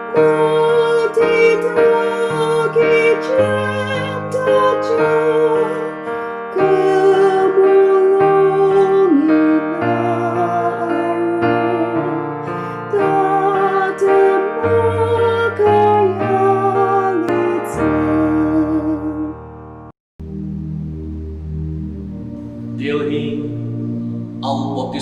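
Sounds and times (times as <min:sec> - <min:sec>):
woman singing: 0:00.0 - 0:19.4
keyboard chords: 0:00.0 - 0:25.0.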